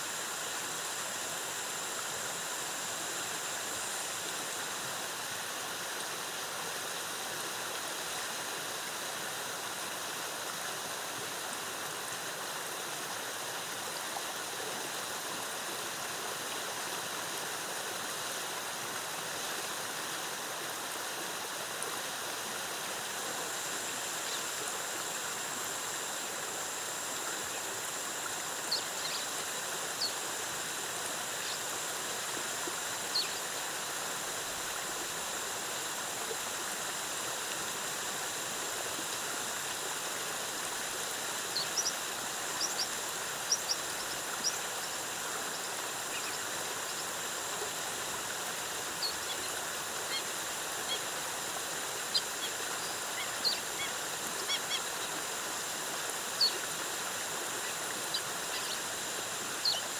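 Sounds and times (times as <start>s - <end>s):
waterfall rushing: 39.4s - 59.9s.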